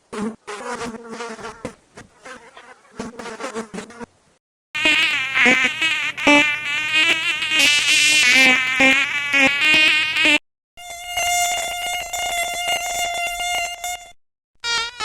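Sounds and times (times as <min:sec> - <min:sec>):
mosquito buzzing: 0:04.8 - 0:15.0.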